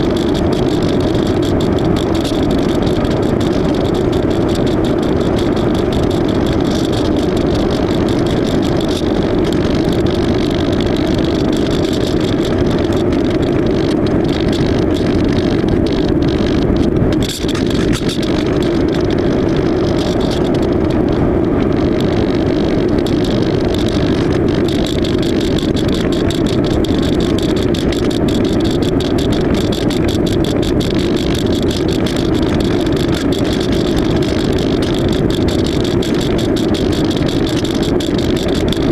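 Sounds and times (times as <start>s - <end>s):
fine crackle: 0.0s - 38.9s
model plane motor and propeller: 0.0s - 38.9s
wind rush: 0.0s - 38.9s.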